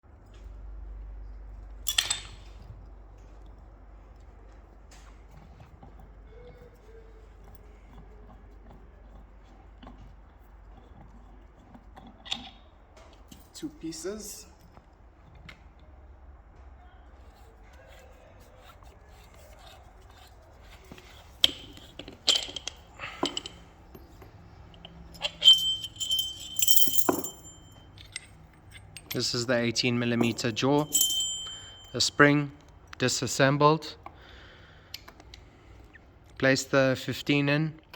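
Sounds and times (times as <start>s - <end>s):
jangling metal rattle: 1.9s - 2.7s, 21.0s - 32.5s
metal parts clinking: 1.9s - 2.7s, 21.4s - 32.5s
low steady hum: 20.9s - 36.4s.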